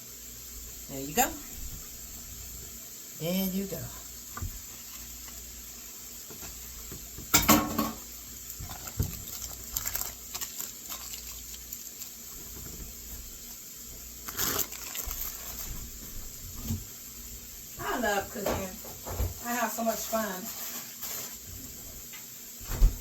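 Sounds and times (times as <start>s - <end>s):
pot cooking hiss: 0.0s - 22.9s
clatters against pot: 7.3s - 8.0s.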